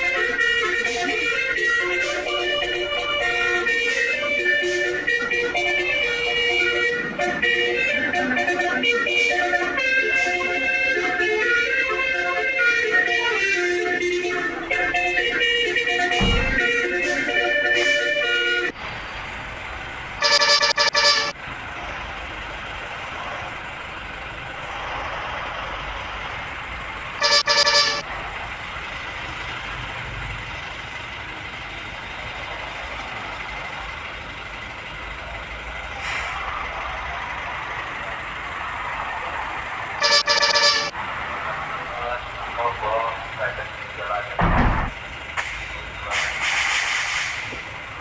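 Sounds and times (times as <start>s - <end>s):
bus air horn blasts: 0.0s - 18.8s, 20.2s - 21.4s, 27.2s - 28.1s, 40.0s - 41.0s
engine and traffic noise: 0.0s - 48.0s.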